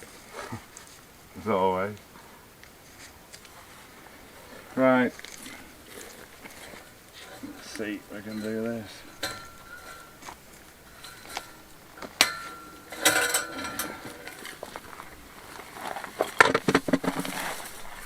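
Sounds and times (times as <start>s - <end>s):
metal fencing clanking: 6.6s - 15.3s
rattling knocks: 7.4s - 15.2s.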